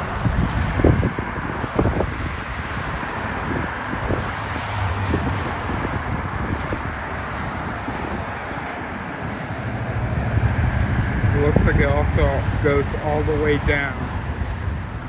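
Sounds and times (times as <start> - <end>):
outdoor rushing noise: 0.0 - 15.0
low rumble: 9.4 - 15.0.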